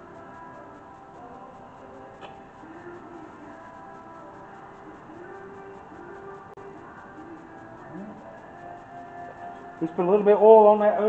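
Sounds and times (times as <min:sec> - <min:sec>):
faint background music: 0:00.0 - 0:11.0.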